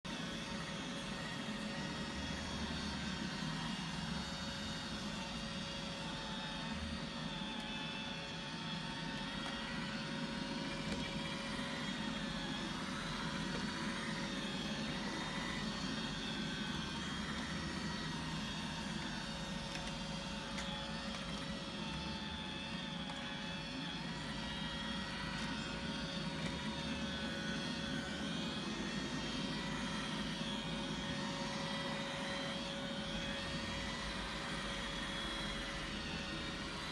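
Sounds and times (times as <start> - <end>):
robot vacuum motor hum: 0.1 - 36.9.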